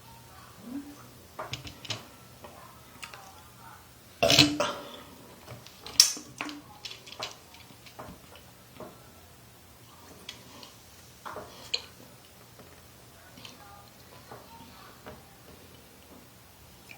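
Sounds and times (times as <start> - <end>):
woman burping: 4.2 - 5.0.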